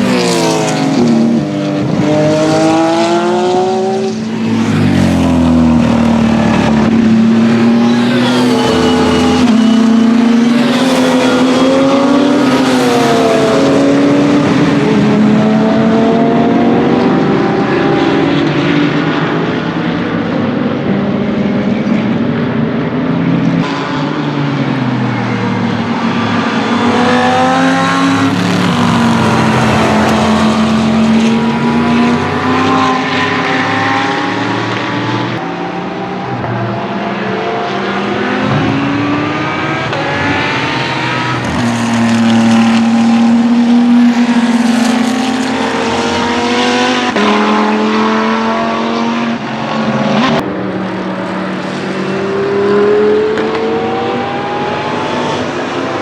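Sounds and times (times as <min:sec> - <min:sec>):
race cars passing at speed: 0:00.0 - 0:56.0.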